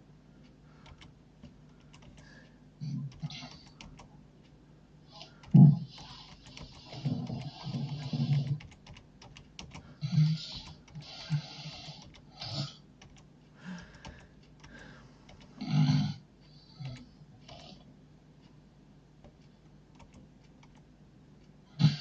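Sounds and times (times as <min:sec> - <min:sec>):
keyboard keys clicking: 0:00.8 - 0:02.3, 0:03.1 - 0:04.1, 0:05.4 - 0:12.3, 0:13.0 - 0:15.5, 0:19.2 - 0:20.8
man snoring: 0:05.2 - 0:08.6, 0:10.0 - 0:12.8.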